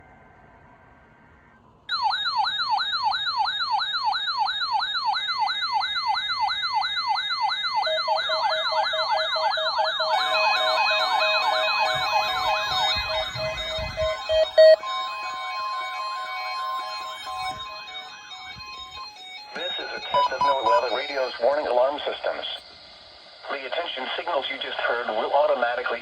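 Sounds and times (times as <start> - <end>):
weather radio alarm siren: 1.1 - 26.0
radio tones and hiss: 19.6 - 26.0.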